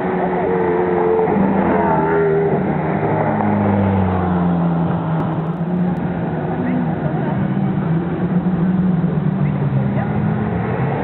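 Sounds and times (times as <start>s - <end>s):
car engine running: 4.0s - 6.1s.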